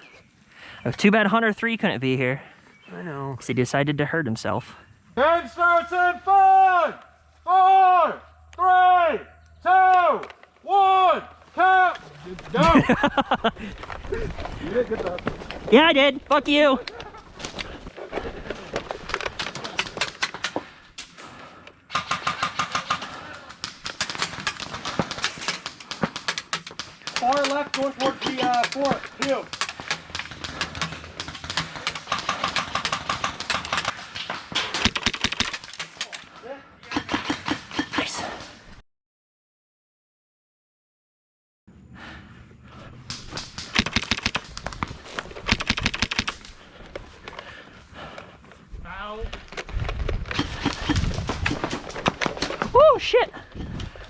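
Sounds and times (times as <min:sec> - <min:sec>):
airsoft guns firing: 0:21.9 - 0:36.1, 0:43.1 - 0:46.6, 0:50.3 - 0:52.6
airsoft rifle firing bursts: 0:34.8 - 0:35.7, 0:43.5 - 0:44.6, 0:45.4 - 0:46.5.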